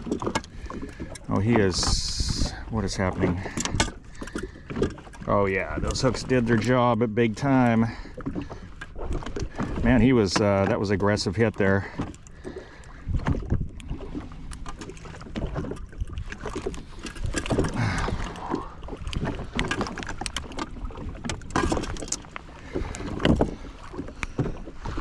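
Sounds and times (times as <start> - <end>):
water splashing: 0.0 - 25.0
wind on microphone: 1.4 - 3.9.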